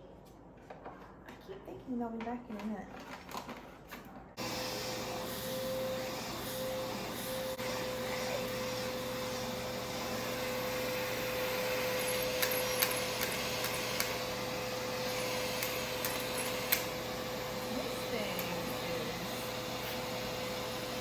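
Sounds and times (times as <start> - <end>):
grooming vacuum humming: 4.4 - 21.0.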